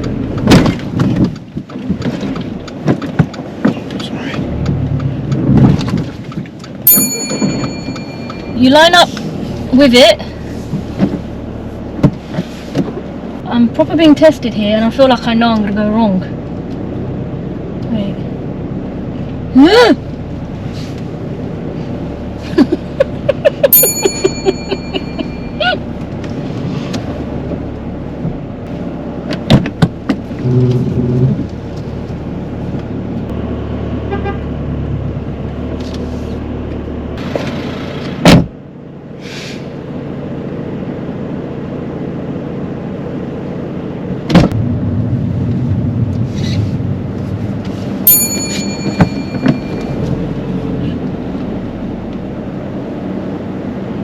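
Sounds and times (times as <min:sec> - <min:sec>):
car engine and road hum: 0:00.0 - 0:54.0
electronic chime: 0:06.9 - 0:08.6, 0:23.7 - 0:25.6, 0:48.1 - 0:50.0.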